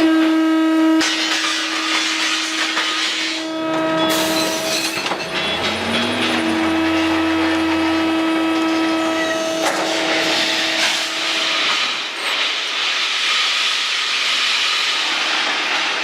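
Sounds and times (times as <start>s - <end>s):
hydraulic shear machine humming: 0.0s - 12.2s.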